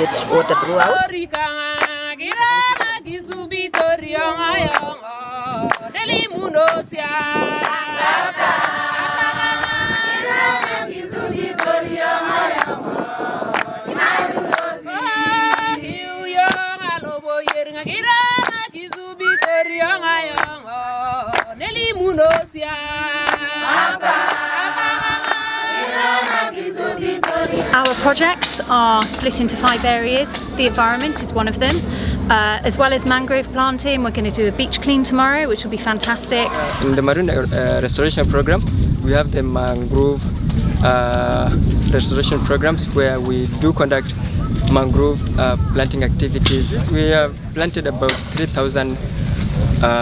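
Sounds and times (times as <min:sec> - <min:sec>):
choir singing in harmony: 0:07.3 - 0:16.4, 0:23.4 - 0:36.8
sharp beat: 0:27.5 - 0:37.3.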